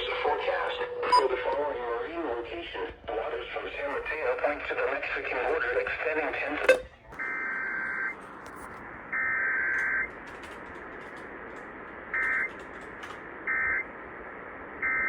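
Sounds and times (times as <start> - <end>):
radio hiss: 0.0 - 9.0.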